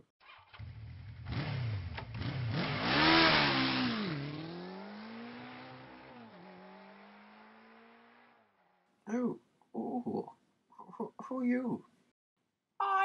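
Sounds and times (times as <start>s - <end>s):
motorbike engine revving: 0.3s - 8.6s.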